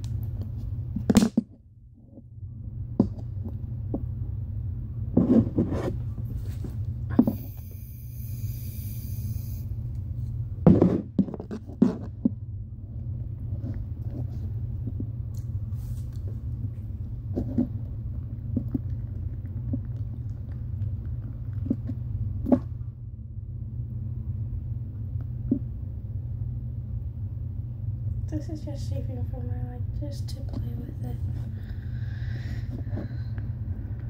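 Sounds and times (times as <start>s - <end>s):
low rumble: 12.0s - 34.0s.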